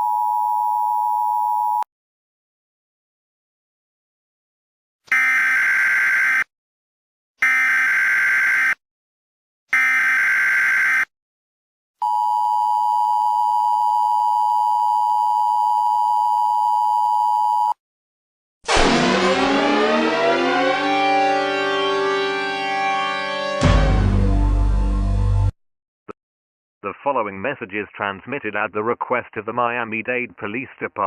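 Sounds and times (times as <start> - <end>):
siren-like falling sweep: 18.7 - 24.5.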